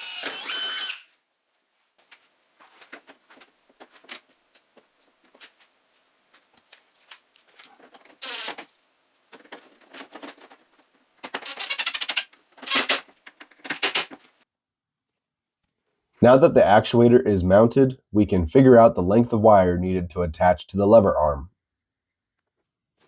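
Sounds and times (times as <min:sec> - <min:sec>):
tools and hardware handling: 0:09.3 - 0:14.4
metal rattles: 0:11.3 - 0:14.3.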